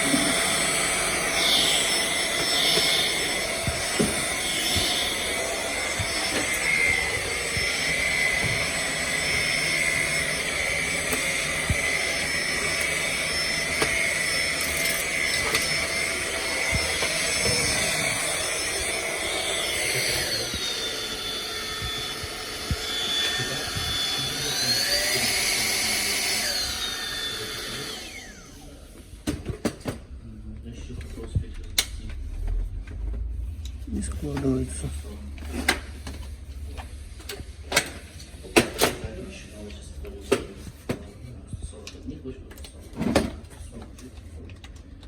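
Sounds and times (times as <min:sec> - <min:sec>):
vacuum cleaner running: 0:00.0 - 0:30.1.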